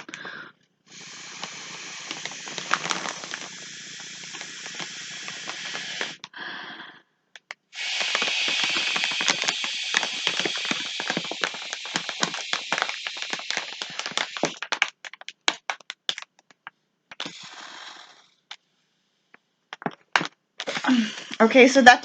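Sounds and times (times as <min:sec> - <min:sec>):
small crackles: 0:00.0 - 0:06.5, 0:07.3 - 0:21.8
breath hissing through a straw: 0:00.0 - 0:07.1, 0:07.7 - 0:14.7, 0:17.2 - 0:18.5, 0:20.6 - 0:21.4.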